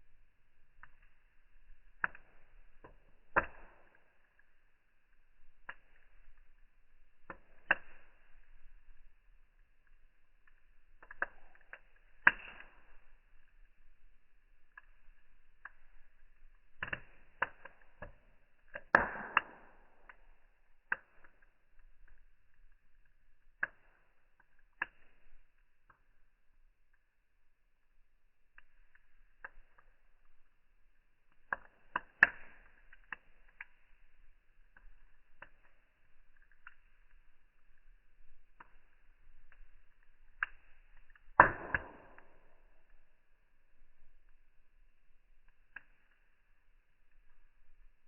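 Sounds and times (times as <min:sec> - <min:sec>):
fire crackling: 0:00.0 - 0:48.0
sharp pops: 0:18.8 - 0:19.7, 0:41.4 - 0:42.3.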